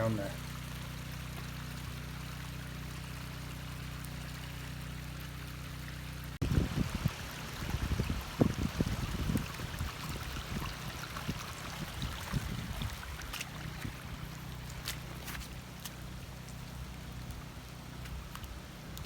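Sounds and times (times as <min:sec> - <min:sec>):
floodwater rushing down a stream: 0:00.0 - 0:19.0
wind thumps on microphone: 0:06.4 - 0:14.0.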